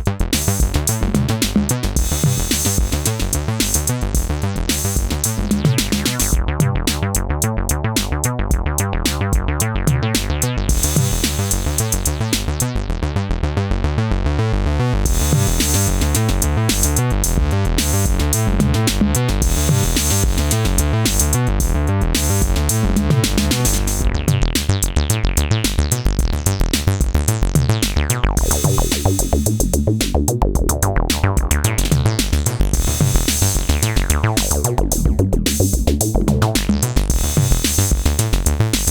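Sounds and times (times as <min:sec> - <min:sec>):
drum machine beat: 0:00.0 - 0:12.8, 0:15.1 - 0:38.9
synthesizer bass line: 0:00.0 - 0:38.9.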